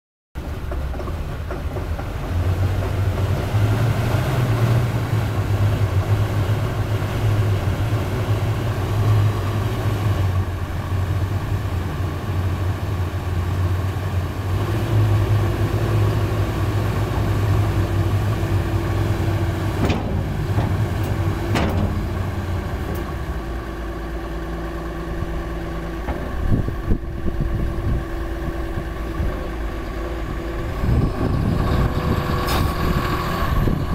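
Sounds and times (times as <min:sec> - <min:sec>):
diesel engine running: 0:00.4 - 0:33.9
sharp knocks: 0:19.8 - 0:22.4.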